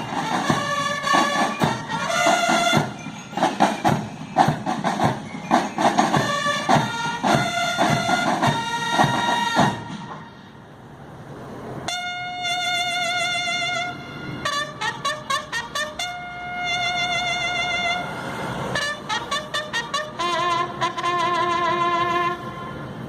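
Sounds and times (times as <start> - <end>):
drum strikes: 0.0 - 10.3
brass notes: 0.0 - 10.6, 11.9 - 23.0.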